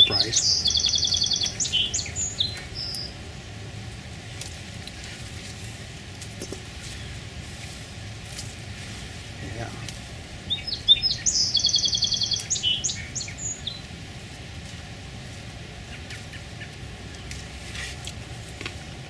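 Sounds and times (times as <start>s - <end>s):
songbird singing with trill: 0.0s - 3.2s, 9.5s - 14.0s.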